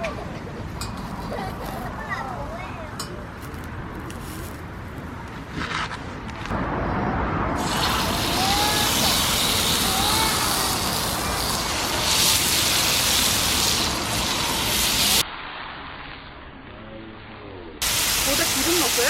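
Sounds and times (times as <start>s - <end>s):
food sizzling on a griddle: 7.6s - 15.8s, 17.8s - 19.0s.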